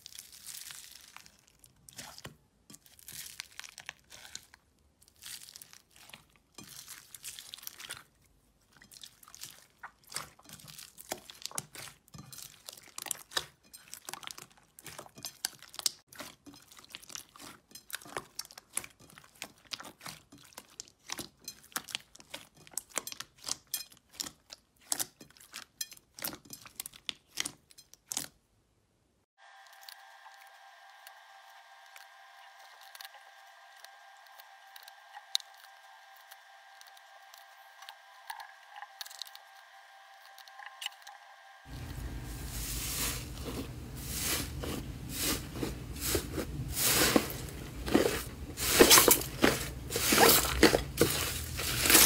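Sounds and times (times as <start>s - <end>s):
slime squeezed crackling and popping: 0.0s - 8.1s.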